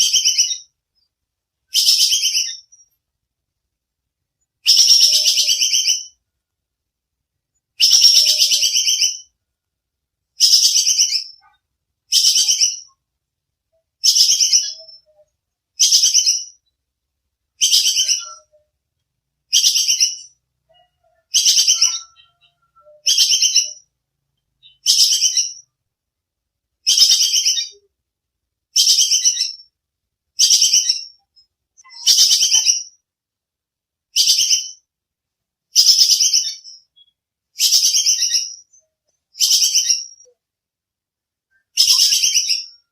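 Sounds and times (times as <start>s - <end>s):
squirrel chattering alarm call: 4.6s - 6.2s, 7.8s - 9.3s, 19.5s - 23.9s.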